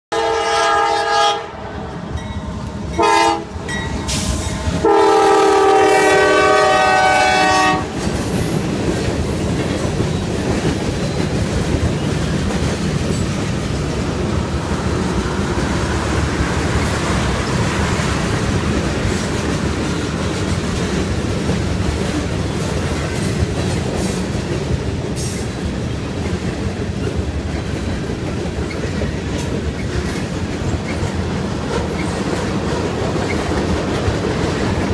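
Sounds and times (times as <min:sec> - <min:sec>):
locomotive air horn: 0:00.1 - 0:01.8, 0:02.9 - 0:08.0
train wheels rumbling on rails: 0:01.6 - 0:34.9
clickety-clack over rail joints: 0:07.4 - 0:34.9.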